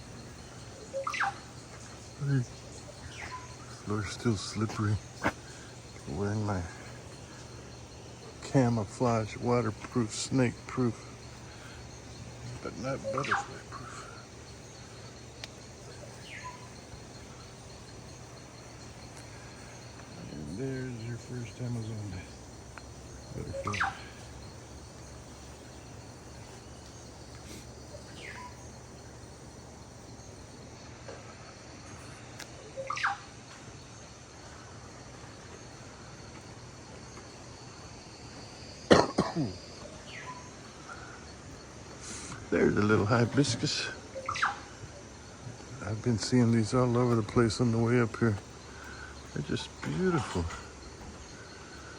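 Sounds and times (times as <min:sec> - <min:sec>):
insect chirring: 0:00.0 - 0:51.9
loud cough: 0:38.9 - 0:39.6.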